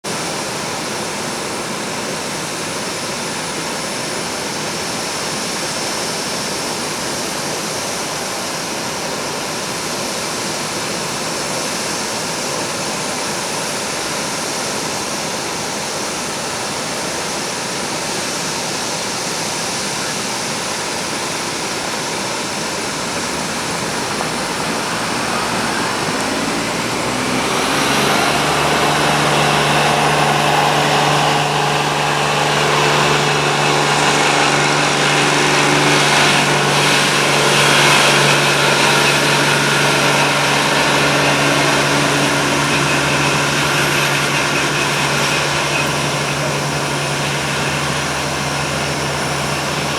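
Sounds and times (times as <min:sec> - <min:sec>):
high engine whine: 0:19.9 - 0:49.9
jet engines roaring: 0:21.0 - 0:49.9.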